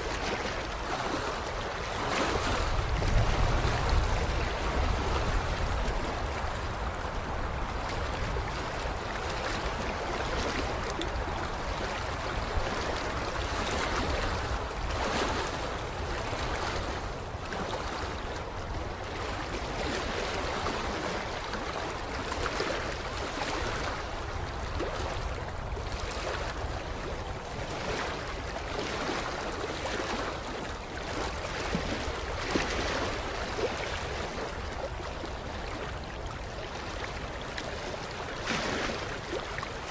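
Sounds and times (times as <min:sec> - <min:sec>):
water lapping at shoreline: 0:00.0 - 0:39.9.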